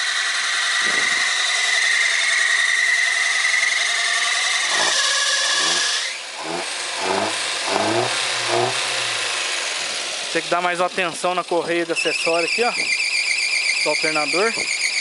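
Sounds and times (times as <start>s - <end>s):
engine belt squealing: 0.0s - 15.0s
car engine running: 4.6s - 12.0s.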